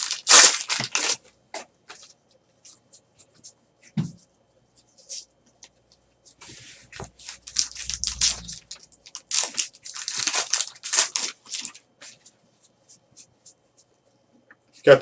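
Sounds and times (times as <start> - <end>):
wrapper crinkling and tearing: 0.0 - 1.2, 7.2 - 11.8.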